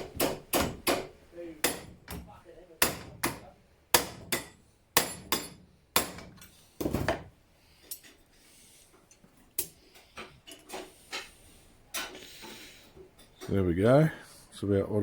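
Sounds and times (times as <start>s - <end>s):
hammer striking metal: 0.0s - 2.2s, 2.8s - 6.4s.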